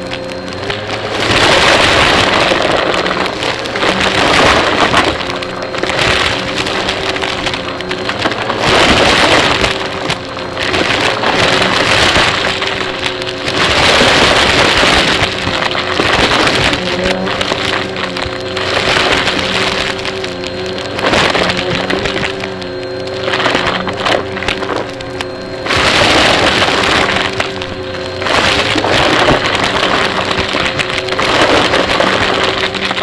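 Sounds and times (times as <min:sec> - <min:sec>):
vacuum cleaner on carpet: 0:00.0 - 0:33.0.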